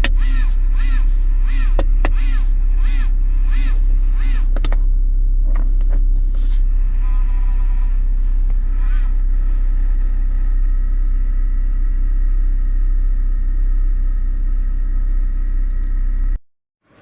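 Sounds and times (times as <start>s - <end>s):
inverter cooling fan whine: 0.0s - 5.5s
car interior low drone: 0.0s - 17.0s.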